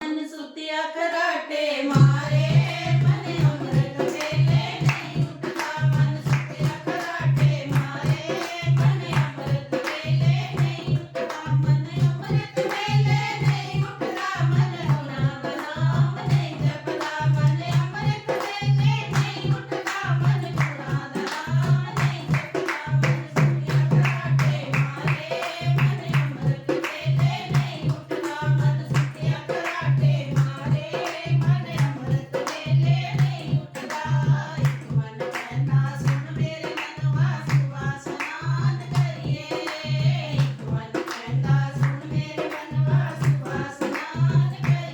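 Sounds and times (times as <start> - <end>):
hand drum beat: 2.0 - 44.9
claps: 4.0 - 11.5, 18.4 - 36.2, 36.8 - 39.1, 40.4 - 44.8.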